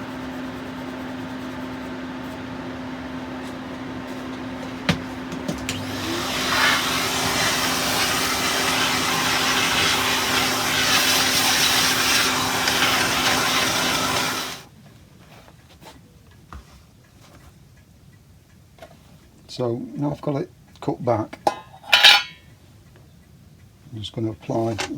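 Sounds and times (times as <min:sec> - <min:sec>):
electric motor humming: 0:05.0 - 0:14.7
loud hiss: 0:05.7 - 0:14.7.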